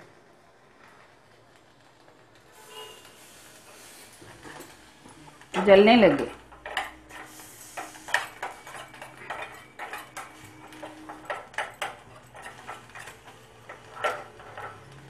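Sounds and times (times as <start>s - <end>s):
spoon scraping a steel bowl: 5.6s - 15.0s.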